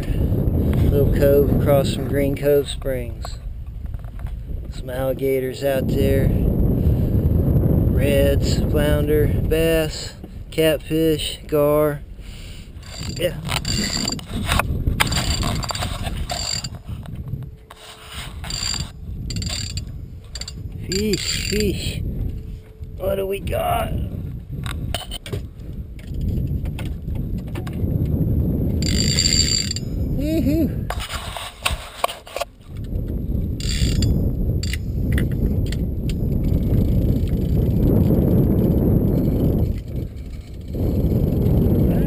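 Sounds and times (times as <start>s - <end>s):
wind on microphone: 0.0s - 42.0s
fishing reel clicker ratcheting: 12.8s - 14.3s, 15.0s - 16.8s, 18.4s - 21.8s, 28.8s - 29.9s, 33.6s - 35.8s.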